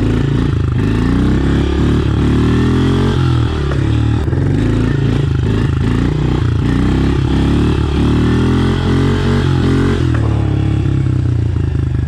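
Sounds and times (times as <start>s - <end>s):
motorbike engine revving: 0.0s - 12.0s.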